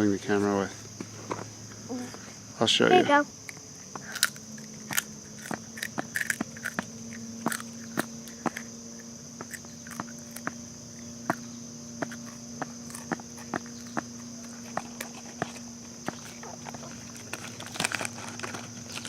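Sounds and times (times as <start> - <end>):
crickets chirping: 0.0 - 19.0
sharp clicks and crackles: 16.2 - 19.0.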